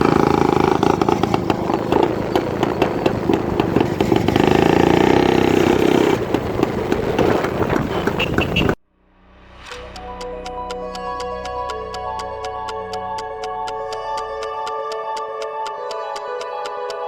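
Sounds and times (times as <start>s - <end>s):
crackling exhaust: 0.0s - 8.8s
motorcycle engine running: 0.0s - 8.8s.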